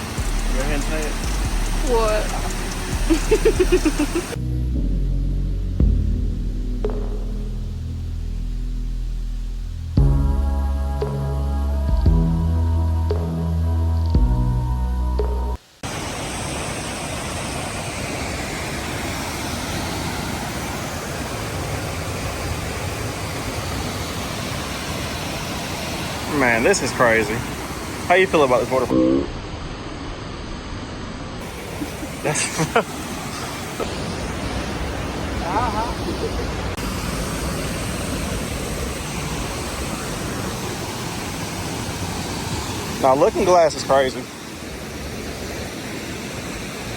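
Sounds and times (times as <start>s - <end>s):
waterfall rushing: 0.0s - 4.4s, 15.8s - 29.8s, 31.4s - 46.9s.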